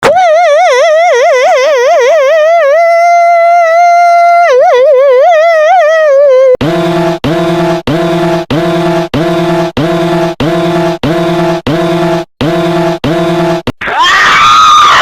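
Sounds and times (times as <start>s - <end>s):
low horn-like tone: 6.6s - 13.7s.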